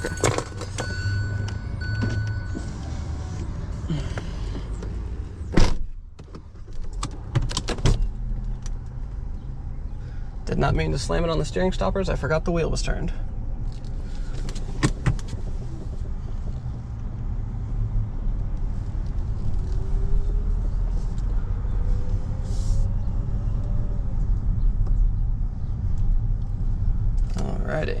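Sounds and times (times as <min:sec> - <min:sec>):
car engine running: 0:12.8 - 0:22.8.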